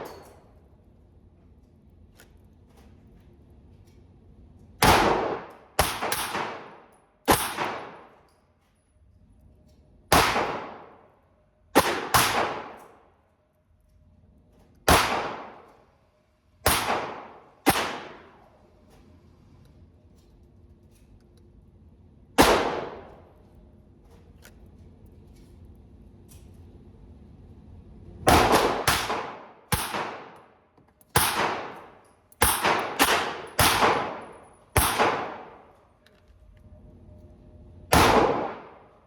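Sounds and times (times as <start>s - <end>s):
handgun shots: 4.8s - 8.1s, 10.1s - 10.9s, 11.8s - 12.9s, 16.7s - 18.3s, 28.3s - 30.4s, 31.1s - 35.6s.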